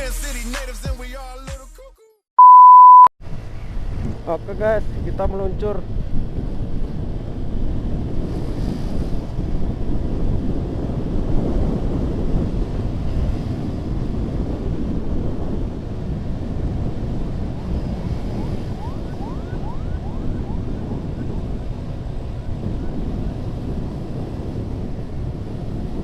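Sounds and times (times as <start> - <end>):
engine and road rumble: 3.2 - 26.0
wind buffeting microphone: 3.3 - 26.0.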